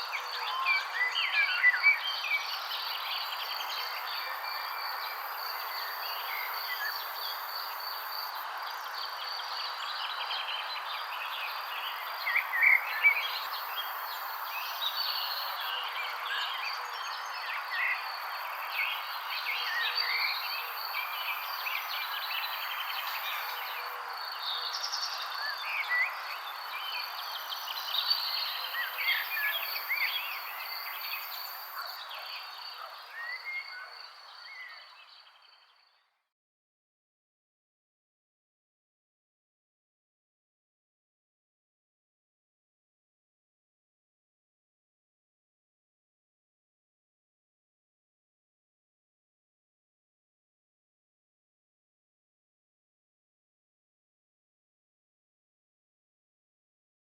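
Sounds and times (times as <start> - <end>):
songbirds chirping: 0.0 - 36.3.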